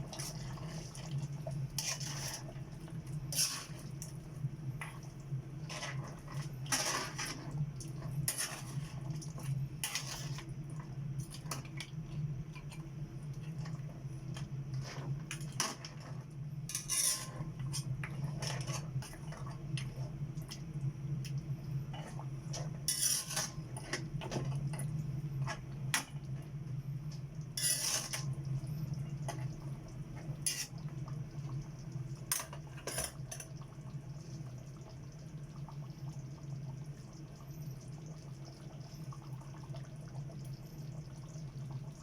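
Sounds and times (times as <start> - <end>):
utensils clinking against dishes: 16.7 - 17.3.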